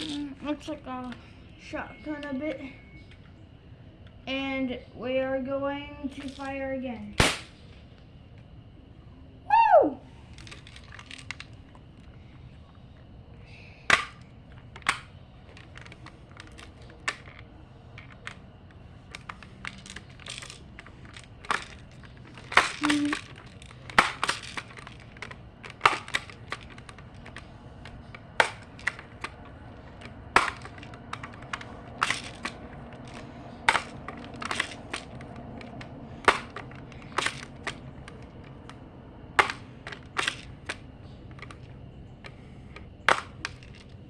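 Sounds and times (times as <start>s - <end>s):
bb gun mechanical clicks: 7.2s - 7.8s, 18.0s - 38.8s, 39.4s - 43.9s.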